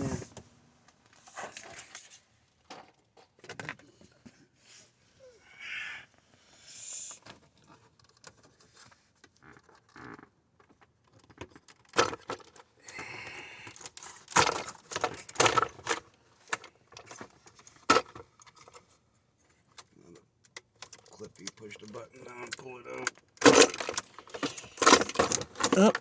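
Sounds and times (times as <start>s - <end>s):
plastic trim clicking and rattling: 19.8s - 26.0s.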